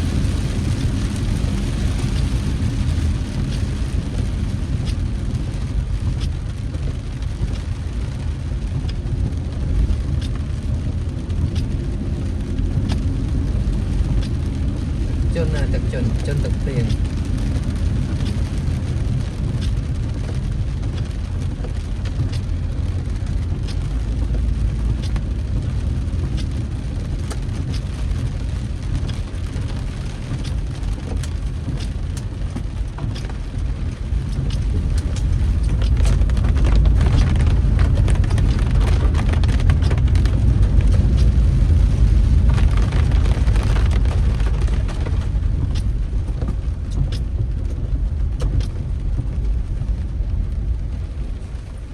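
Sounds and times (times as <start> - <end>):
low rumble of street noise: 0.0 - 51.9
sharp ticks of rain: 0.0 - 51.9.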